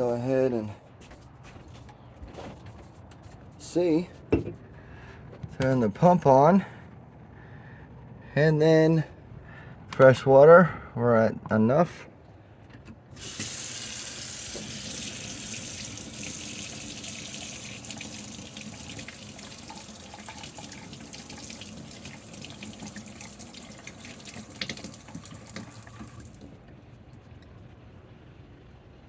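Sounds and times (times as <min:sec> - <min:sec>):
water running hard from tap: 0:13.2 - 0:26.5.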